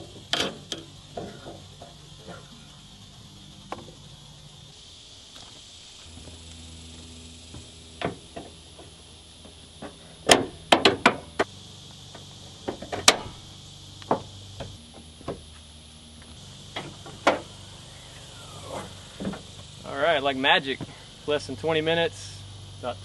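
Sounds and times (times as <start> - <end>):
sharp knocks and clicks: 8.0 - 11.5, 14.0 - 15.4.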